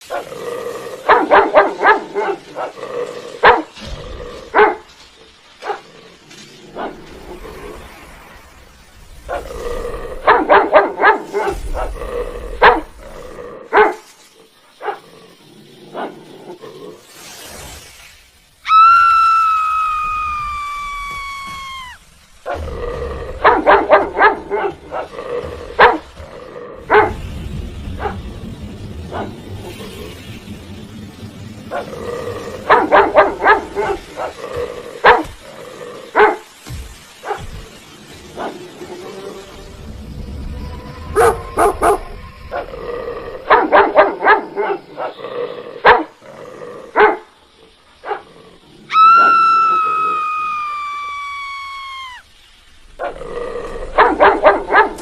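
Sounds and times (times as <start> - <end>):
dog barking: 10.2 - 11.4, 13.7 - 14.0, 23.4 - 25.1, 25.8 - 26.0, 45.8 - 46.1, 47.0 - 47.2, 54.0 - 55.0
dog howling: 48.9 - 52.3.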